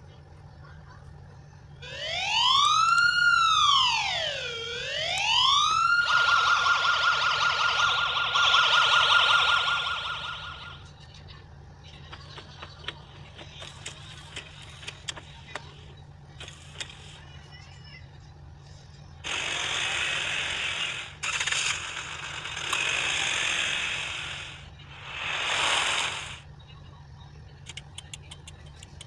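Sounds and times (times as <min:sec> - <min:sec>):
electronic siren wailing and warbling: 0:01.8 - 0:10.9
faint clicks: 0:27.6 - 0:29.0.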